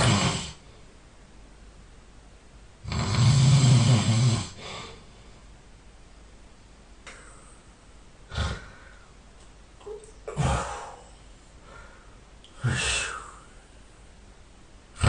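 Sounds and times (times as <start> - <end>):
faint steady hum: 0.0 - 15.0
sleeping person breathing noisily: 8.3 - 9.2, 10.4 - 13.7.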